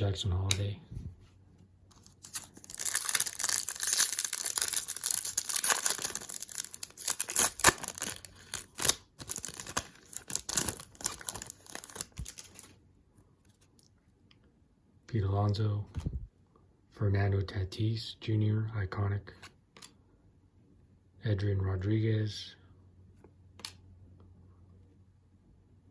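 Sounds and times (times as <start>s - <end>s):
foil wrapper tearing and crinkling: 2.0s - 12.7s.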